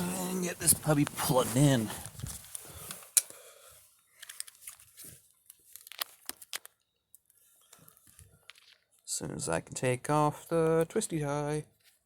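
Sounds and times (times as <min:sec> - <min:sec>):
plastic packaging crinkling: 0:04.2 - 0:08.9.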